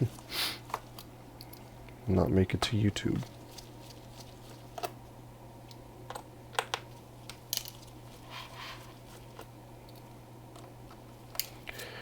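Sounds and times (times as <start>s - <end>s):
steady low hum: 0.0s - 12.0s
soft rustle: 3.2s - 4.8s.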